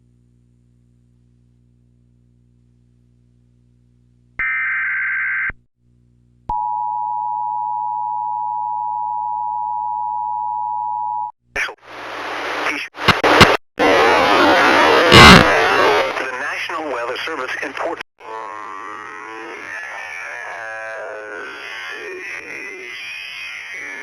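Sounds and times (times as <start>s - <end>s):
loud hiss and crackle: 11.9s - 16.2s.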